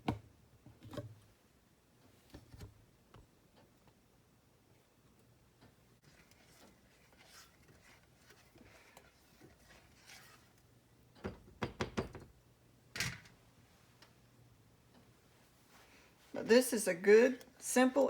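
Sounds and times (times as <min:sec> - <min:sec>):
spoon knocking against saucepan: 0:11.2 - 0:12.3.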